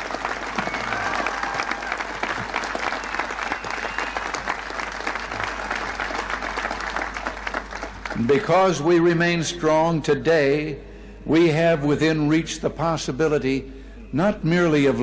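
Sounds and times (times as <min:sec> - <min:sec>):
crowd applauding: 0:00.0 - 0:08.6
whistles: 0:00.6 - 0:01.6, 0:02.9 - 0:04.6.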